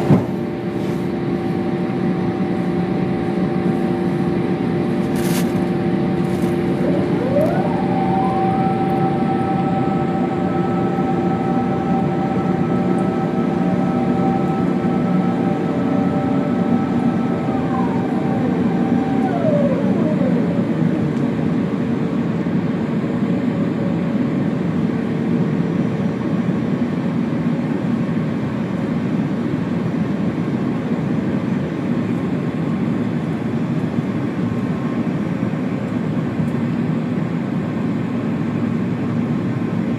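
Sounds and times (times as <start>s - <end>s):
airplane cabin engine rumble: 0.0s - 39.9s
whining tones: 0.3s - 22.6s.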